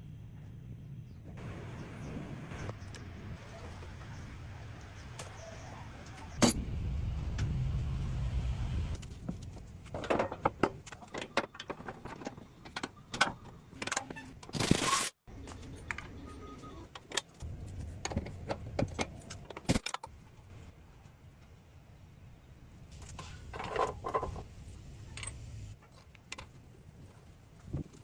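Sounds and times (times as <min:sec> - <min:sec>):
low rumble: 0:00.1 - 0:09.9.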